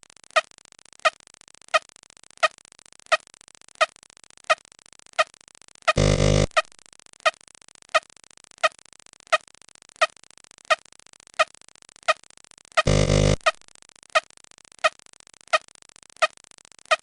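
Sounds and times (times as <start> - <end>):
buzzy sound effect: 12.9 - 13.5.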